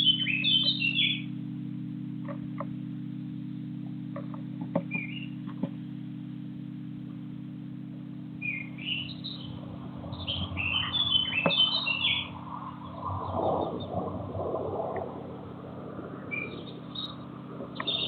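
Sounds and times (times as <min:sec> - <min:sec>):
small bird chirping: 0:00.0 - 0:01.3, 0:04.2 - 0:05.9, 0:08.4 - 0:13.9, 0:16.2 - 0:18.0
steady low hum: 0:00.0 - 0:18.0.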